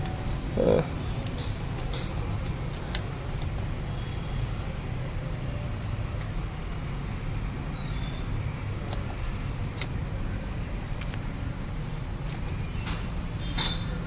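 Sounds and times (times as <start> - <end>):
light metal clicks: 1.1 - 4.6.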